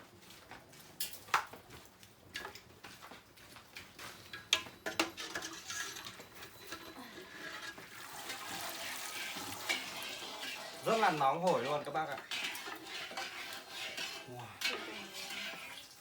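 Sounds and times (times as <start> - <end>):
kitchen utensils clinking: 4.1 - 16.0
liquid rushing in cooking pot: 7.2 - 16.0.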